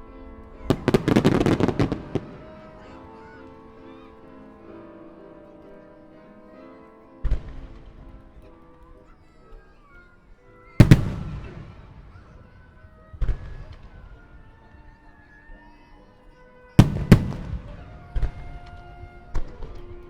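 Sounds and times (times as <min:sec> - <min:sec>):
faint music: 0:00.0 - 0:20.0
fireworks booms: 0:00.7 - 0:03.0, 0:10.8 - 0:14.0, 0:16.8 - 0:19.3.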